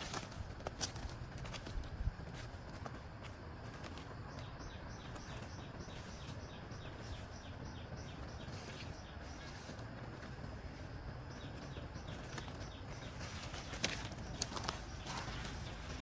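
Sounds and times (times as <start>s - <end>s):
bird calling: 3.6s - 16.0s.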